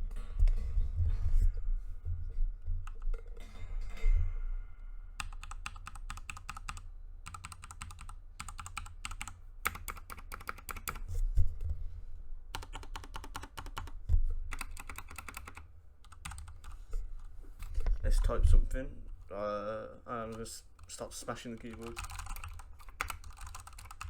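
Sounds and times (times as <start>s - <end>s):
typing on mechanical keyboard: 5.2s - 11.0s, 12.5s - 16.8s, 20.2s - 24.0s.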